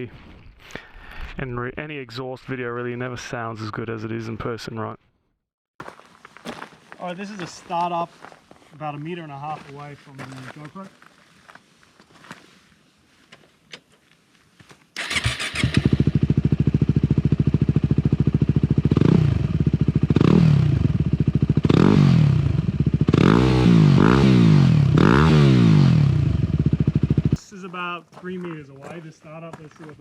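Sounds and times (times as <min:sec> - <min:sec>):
motorcycle engine idling: 0:15.0 - 0:23.2, 0:26.1 - 0:27.4
motorcycle engine revving: 0:15.0 - 0:27.4.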